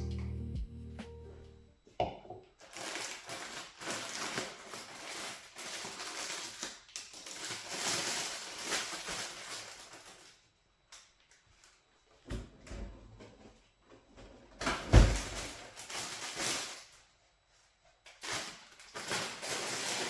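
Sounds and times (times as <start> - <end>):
crackly crunching food preparation: 2.4 - 11.9, 14.7 - 17.2, 17.9 - 20.0.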